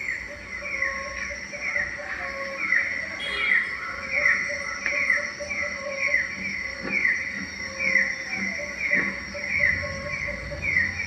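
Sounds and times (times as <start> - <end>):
insect drone: 0.0 - 11.0.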